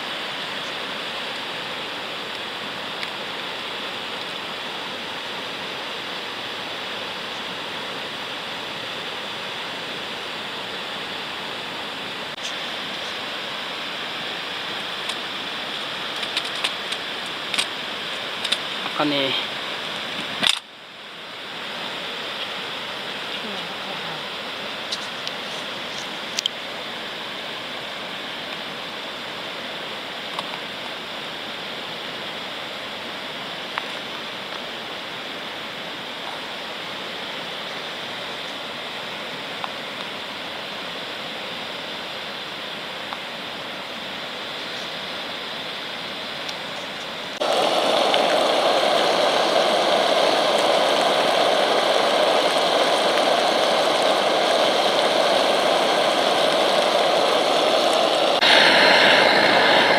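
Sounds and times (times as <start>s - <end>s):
fire crackles: 0.0s - 41.2s, 42.4s - 59.9s
stove fire hissing: 0.0s - 59.9s
burner roaring: 47.4s - 59.9s.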